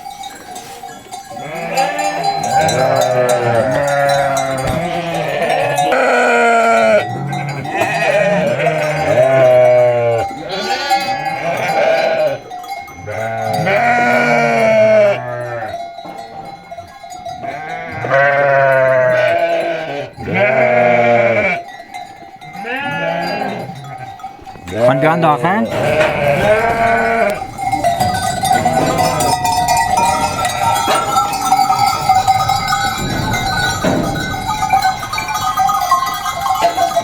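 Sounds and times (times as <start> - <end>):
livestock bells clanking: 0.0 - 37.0
sheep bleating: 1.3 - 15.8, 17.4 - 21.7, 22.6 - 33.1.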